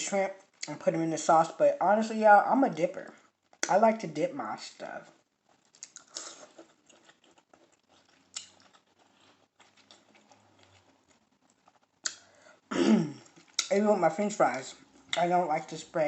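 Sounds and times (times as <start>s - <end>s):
chewing shrimp: 5.3s - 12.3s, 13.2s - 13.7s.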